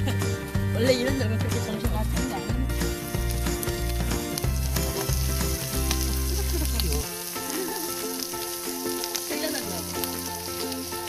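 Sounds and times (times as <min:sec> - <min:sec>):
background music with bass line: 0:00.0 - 0:11.0
steady sizzling hiss: 0:00.0 - 0:11.0.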